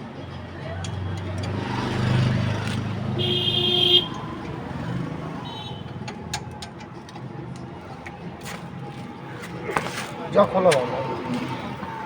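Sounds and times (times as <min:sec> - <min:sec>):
traffic rumble: 0:00.0 - 0:12.0
vehicle horn honking: 0:03.2 - 0:04.2.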